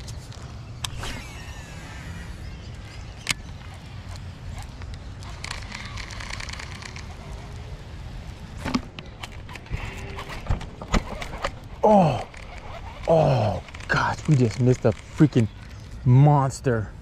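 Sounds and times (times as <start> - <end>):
sharp clicks: 2.7 - 7.2, 8.7 - 15.8.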